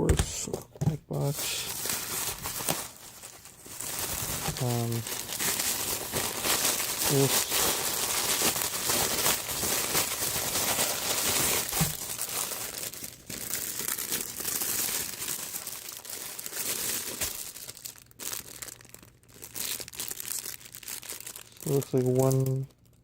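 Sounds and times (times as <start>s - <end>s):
plastic packaging crinkling: 0.4s - 23.0s.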